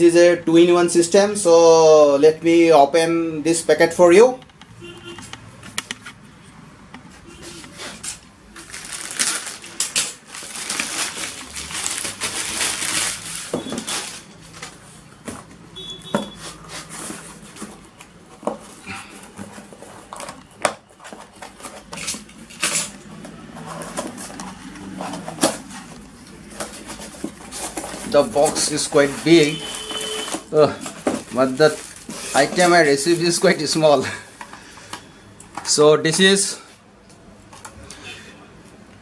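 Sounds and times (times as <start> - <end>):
packaging crinkling and rustling: 7.4 - 15.5, 16.3 - 35.0.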